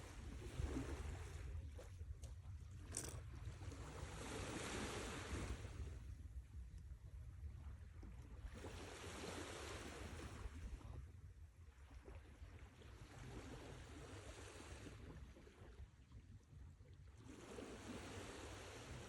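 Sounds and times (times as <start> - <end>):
sea waves breaking: 3.6 - 6.1, 8.4 - 10.9, 17.2 - 19.0.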